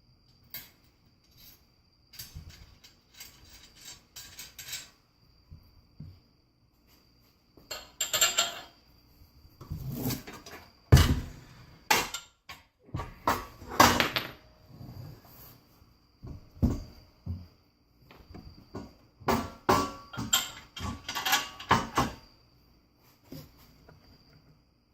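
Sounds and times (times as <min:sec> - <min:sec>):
metal parts clanking and rattling: 0:00.5 - 0:05.0, 0:07.7 - 0:08.8, 0:19.3 - 0:22.2.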